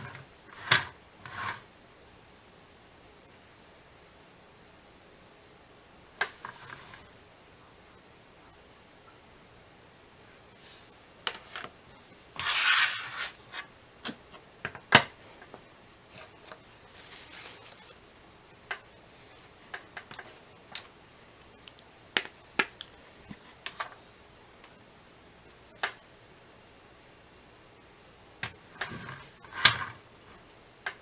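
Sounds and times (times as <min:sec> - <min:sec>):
rubbing rustle: 0:12.4 - 0:13.7, 0:16.1 - 0:21.5
small objects clicking and tapping: 0:19.7 - 0:23.0.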